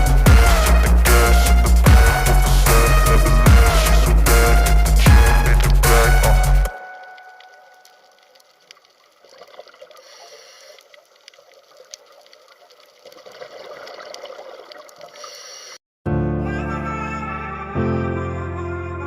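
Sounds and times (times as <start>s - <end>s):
water gurgling and trickling: 1.6s - 15.8s.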